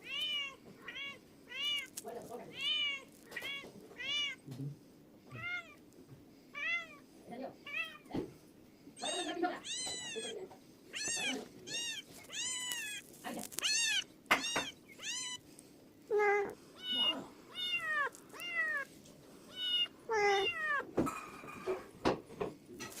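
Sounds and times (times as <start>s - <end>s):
cat meowing: 0.0s - 4.5s, 5.3s - 5.8s, 6.6s - 7.0s, 7.7s - 8.1s, 9.0s - 15.4s, 16.1s - 18.9s, 19.5s - 21.0s.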